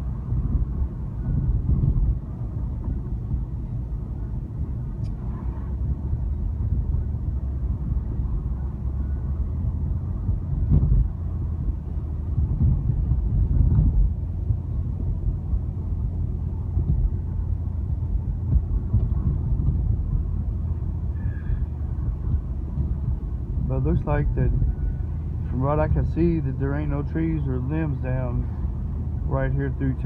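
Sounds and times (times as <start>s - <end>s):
car engine and tyre rumble: 0.0s - 30.0s
car bumps: 10.3s - 11.2s, 12.3s - 15.2s.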